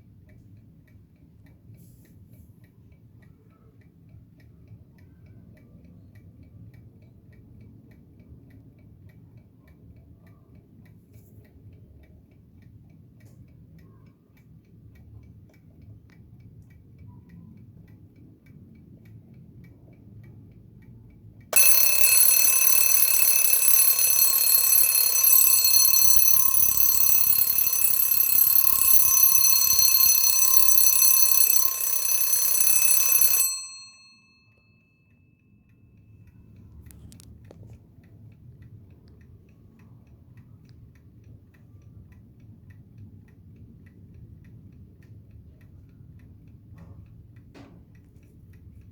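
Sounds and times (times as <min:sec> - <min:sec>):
alarm clock ticking: 0:21.5 - 0:34.4
alarm bell ringing: 0:21.6 - 0:34.6.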